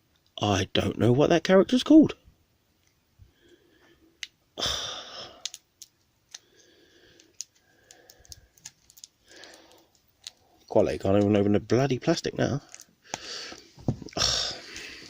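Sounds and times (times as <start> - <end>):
plastic wrapper crinkling: 5.4 - 11.4, 12.5 - 13.0.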